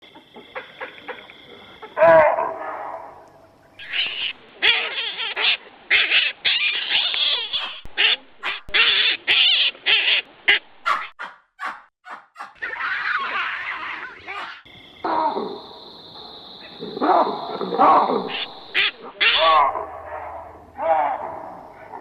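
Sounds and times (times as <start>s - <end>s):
baboons calling: 3.8s - 15.6s, 16.6s - 22.0s.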